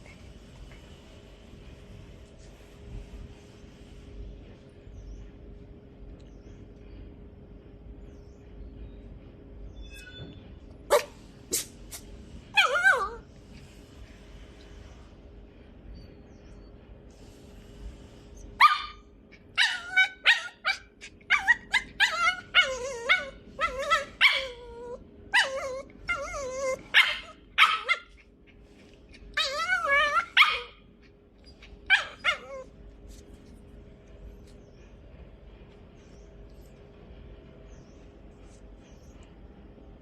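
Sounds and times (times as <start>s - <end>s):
faint steady hum: 0.0s - 40.0s
puppy yipping and barking: 10.9s - 11.6s, 12.6s - 13.2s, 18.6s - 19.0s, 19.6s - 28.3s, 29.2s - 30.8s, 31.4s - 32.7s
puppy whining: 12.5s - 13.3s, 18.6s - 33.2s.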